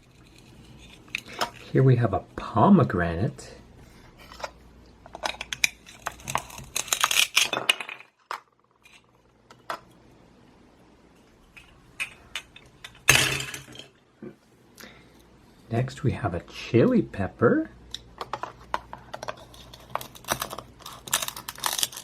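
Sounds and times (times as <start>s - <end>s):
plastic toy pieces clacking: 18.2s - 22.0s
velcro tearing: 19.9s - 22.0s.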